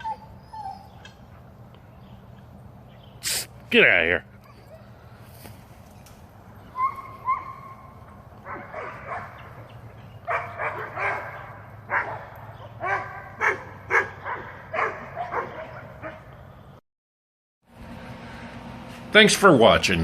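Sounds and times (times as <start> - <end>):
dog whining: 0.0 - 1.3, 4.4 - 5.0, 6.6 - 8.0
dog barking: 6.8 - 9.6, 10.2 - 16.3.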